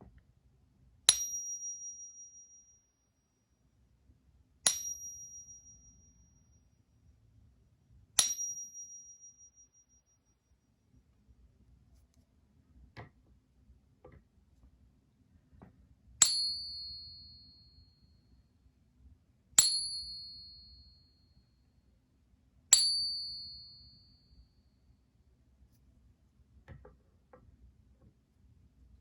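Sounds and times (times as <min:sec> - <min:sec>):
silver coin ringing when tapped: 0:04.6 - 0:06.6, 0:08.2 - 0:10.2.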